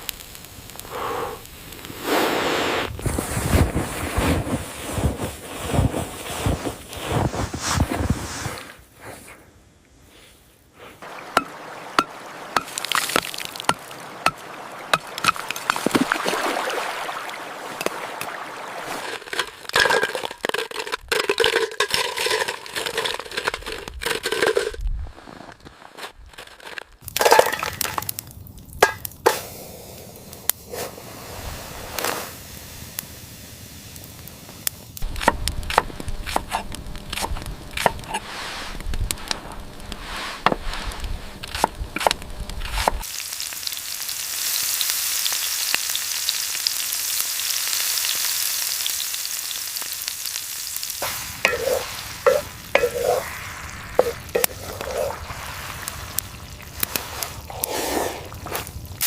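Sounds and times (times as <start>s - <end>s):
high sizzle: 0.0s - 7.2s, 27.0s - 59.0s
utensil stirring in a pan: 18.9s - 24.7s, 51.0s - 56.2s
food frying in a pan: 35.0s - 57.7s.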